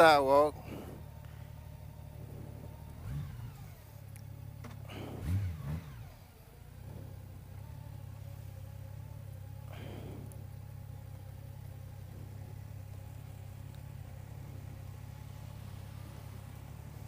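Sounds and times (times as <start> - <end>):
motorcycle engine idling and revving: 0.0 - 17.0.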